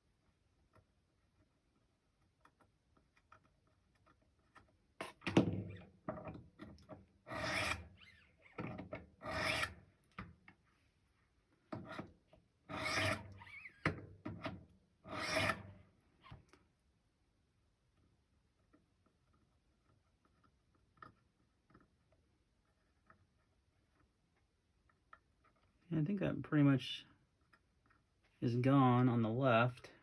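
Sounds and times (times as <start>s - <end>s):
knife rasping on sharpening stone: 9.3s - 9.7s, 12.7s - 13.2s, 15.1s - 15.6s.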